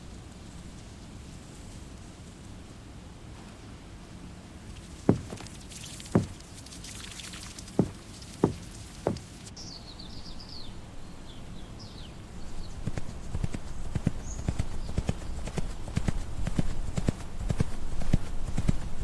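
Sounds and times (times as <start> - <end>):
horse hooves clip-clopping: 5.0 - 6.6, 7.6 - 19.0
sharp knocks: 5.1 - 5.5, 6.2 - 6.4, 7.8 - 9.3, 12.6 - 19.0
high bird chirps: 9.6 - 18.9.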